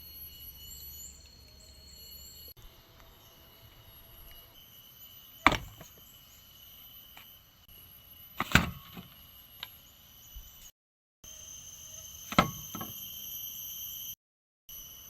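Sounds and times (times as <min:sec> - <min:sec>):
high-pitched insect drone: 0:00.0 - 0:15.0
sharp knocks: 0:05.5 - 0:05.9.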